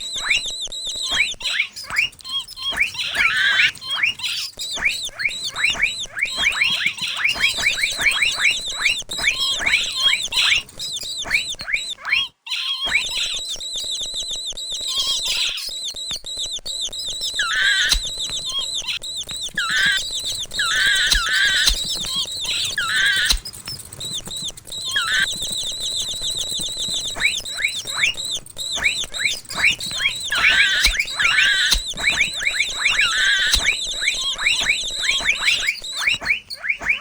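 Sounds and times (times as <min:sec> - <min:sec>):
high-pitched mouse squeaks: 0:00.0 - 0:37.0.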